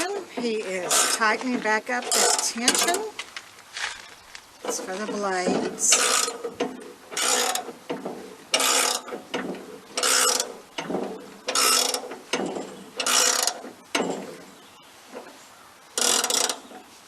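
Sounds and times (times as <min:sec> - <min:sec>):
ratcheting tensioner strokes: 0:05.9 - 0:14.2, 0:16.0 - 0:16.6.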